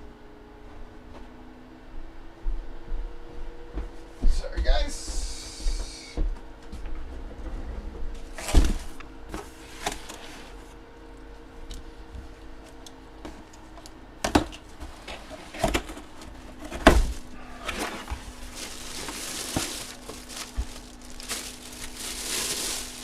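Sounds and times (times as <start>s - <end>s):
cards and packaging rustling: 14.8s - 23.0s.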